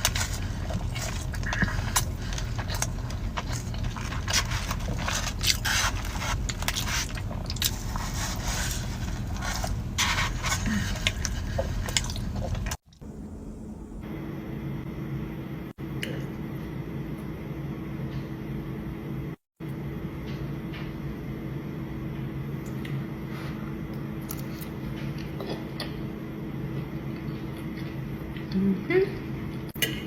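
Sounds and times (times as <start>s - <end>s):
food chewing and crunching: 0.0s - 13.0s, 24.2s - 28.7s
low hum with faint tone: 0.0s - 30.0s.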